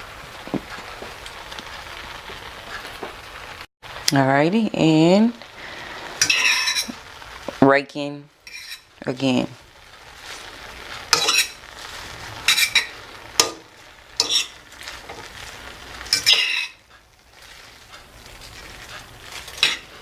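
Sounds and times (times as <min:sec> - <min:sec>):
utensil scraping a pot: 0:06.2 - 0:07.0, 0:08.5 - 0:08.9, 0:10.0 - 0:20.0.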